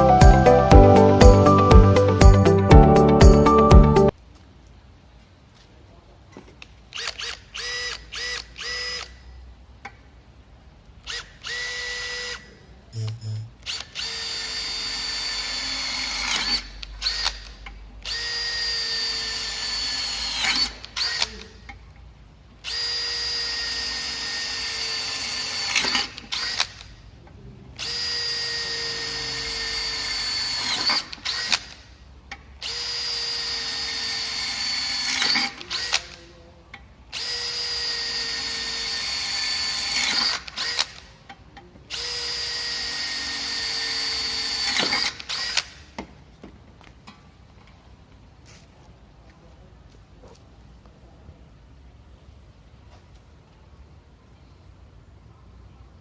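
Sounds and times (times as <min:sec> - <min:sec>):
cordless drill motor whine: 0:07.0 - 0:09.2, 0:11.1 - 0:21.4, 0:22.6 - 0:26.7, 0:27.8 - 0:31.6, 0:37.2 - 0:40.9.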